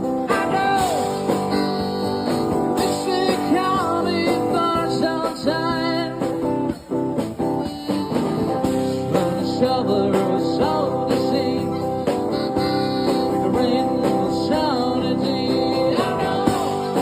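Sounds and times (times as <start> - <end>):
person singing: 0.0 - 6.6, 8.8 - 17.0
guitar: 0.0 - 17.0
rock band playing: 0.0 - 17.0.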